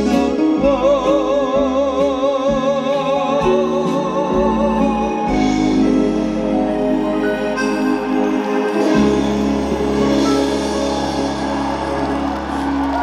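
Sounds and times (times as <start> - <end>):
man singing with wide vibrato: 0.0 - 6.5
backing track music: 0.0 - 13.0.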